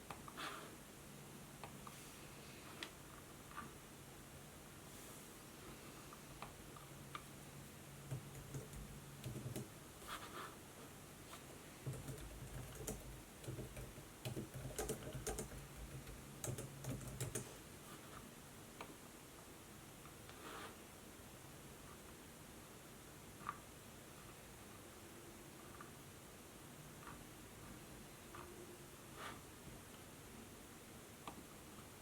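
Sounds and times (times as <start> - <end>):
laptop keyboard typing: 8.0 - 9.8, 11.8 - 17.6.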